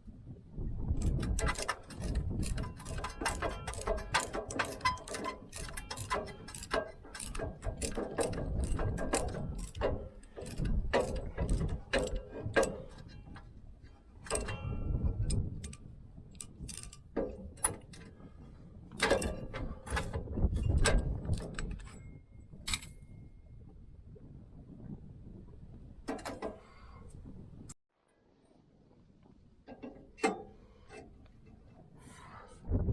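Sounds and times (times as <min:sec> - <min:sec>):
ratchet wrench clicking: 0:01.0 - 0:13.0
metal tools knocking: 0:01.0 - 0:13.4, 0:14.2 - 0:15.8.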